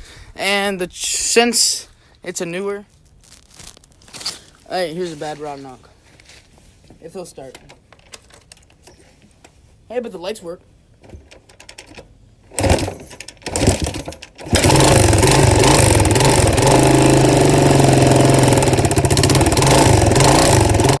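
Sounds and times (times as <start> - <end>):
engine cranking: 11.2 - 21.0
engine running with rod knock: 12.6 - 21.0.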